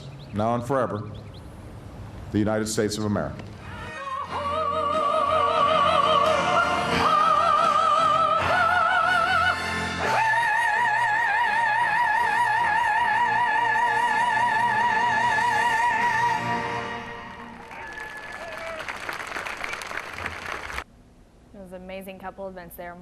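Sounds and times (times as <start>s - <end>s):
operatic singing with vibrato: 3.6s - 18.1s.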